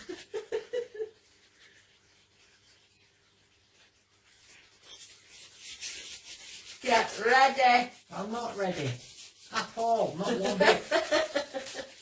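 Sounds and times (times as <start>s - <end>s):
hand rubbing wax strip: 0.0s - 12.0s
person speaking: 6.8s - 11.2s.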